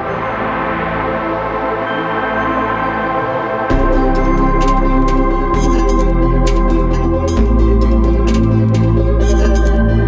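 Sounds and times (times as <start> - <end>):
light percussion ticks: 3.7 - 10.0.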